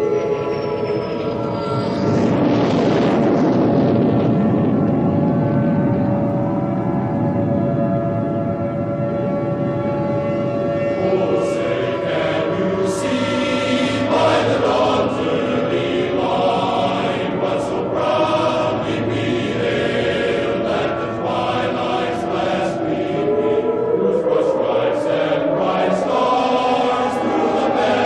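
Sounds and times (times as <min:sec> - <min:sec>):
choir singing slow chords: 0:06.7 - 0:28.0.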